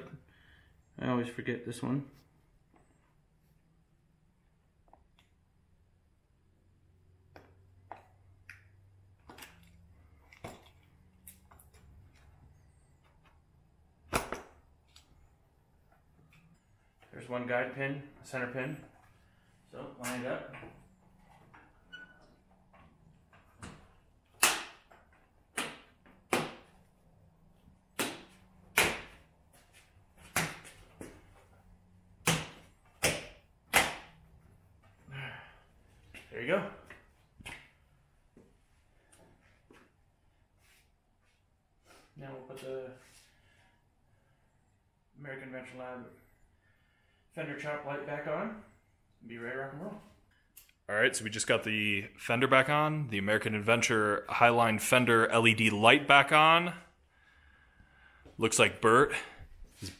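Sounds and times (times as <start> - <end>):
sharp smacks on plastic: 24.4 - 24.9, 25.5 - 26.7, 27.9 - 29.2, 30.2 - 30.8, 32.2 - 34.2.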